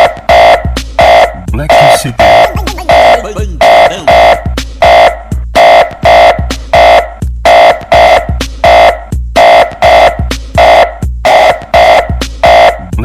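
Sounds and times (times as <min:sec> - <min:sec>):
buzzing horn-like synth stabs: 0:00.3 - 0:12.8
kick drum: 0:02.3 - 0:09.4.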